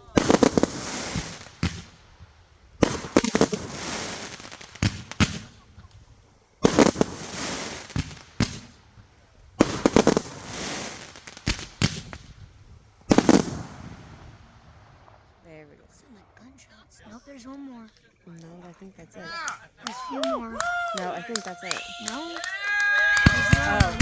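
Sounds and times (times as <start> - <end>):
fireworks bangs: 0.0 - 24.0
fireworks crackling: 0.0 - 24.0.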